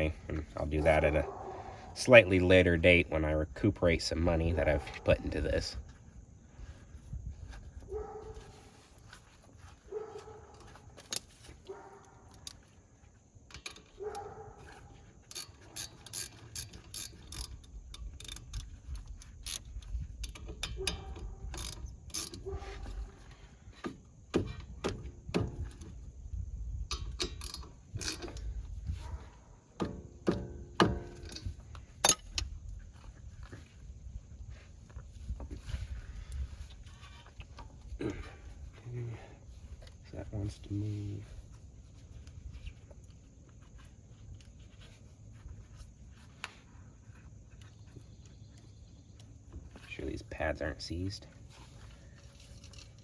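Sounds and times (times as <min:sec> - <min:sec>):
ratchet wrench clicking: 0:15.2 - 0:22.4, 0:26.9 - 0:28.5
tools knocking on metal parts: 0:26.9 - 0:28.4, 0:29.8 - 0:32.5.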